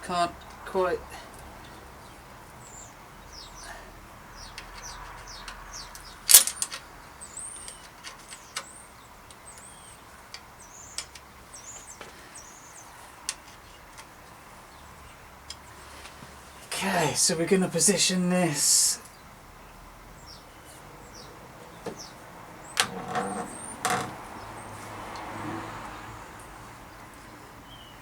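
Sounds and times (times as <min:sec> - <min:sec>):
bike parts and tools clicking: 0:04.4 - 0:12.0.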